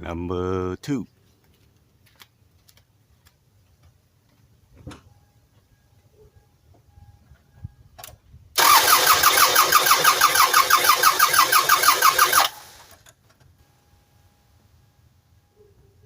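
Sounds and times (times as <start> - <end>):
car engine cranking on starter: 8.6 - 13.1.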